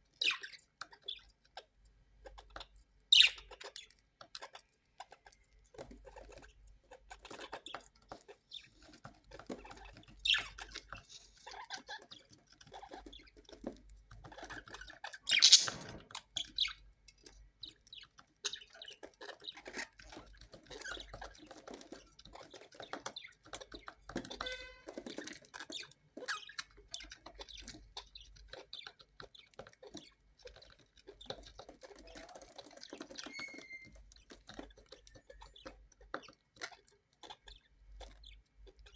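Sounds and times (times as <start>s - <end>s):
small clicks and scratches: 0.0s - 38.9s
parrot squawk: 15.3s - 16.0s
parrots chirping and calling: 15.3s - 16.7s, 33.3s - 33.9s.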